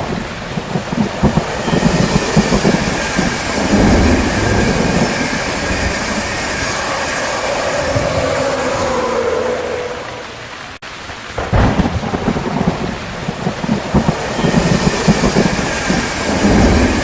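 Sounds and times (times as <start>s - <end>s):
rumble of thunder: 0.0s - 10.3s, 11.1s - 17.0s
steady rain: 0.0s - 17.0s.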